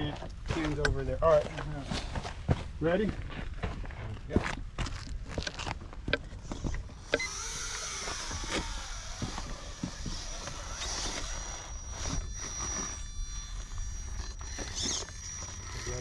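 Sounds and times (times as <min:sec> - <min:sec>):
electric motor whining: 0:05.4 - 0:16.0.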